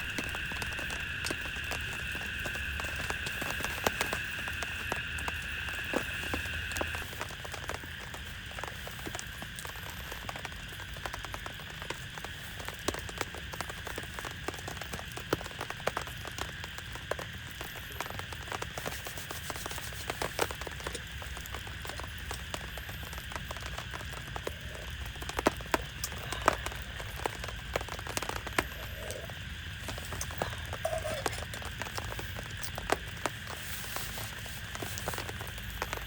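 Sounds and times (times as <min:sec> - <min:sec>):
rain hiss: 0:00.0 - 0:36.0
raindrops tapping on surface: 0:00.0 - 0:36.0.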